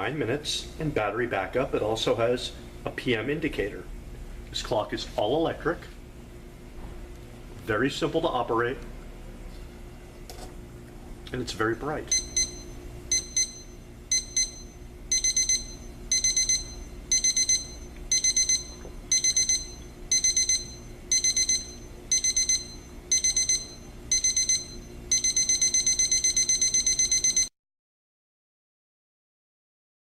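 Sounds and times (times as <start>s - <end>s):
alarm clock beeping: 12.1s - 27.5s.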